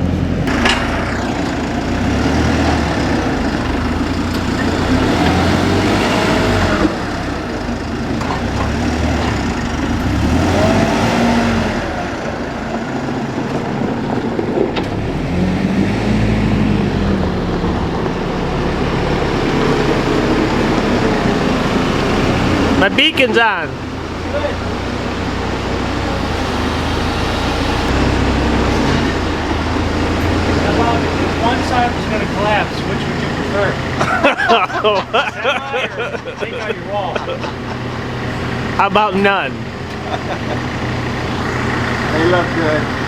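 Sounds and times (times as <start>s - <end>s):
vehicle engine revving: 0.0s - 22.9s, 23.8s - 34.0s.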